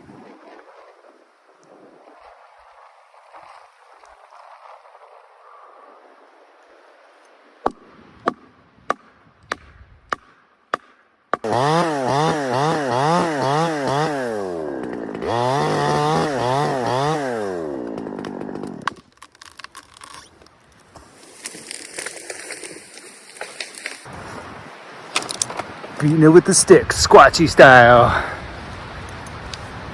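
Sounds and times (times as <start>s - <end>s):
chainsaw running at high revs: 11.4s - 19.0s
scattered crackles: 17.9s - 29.8s.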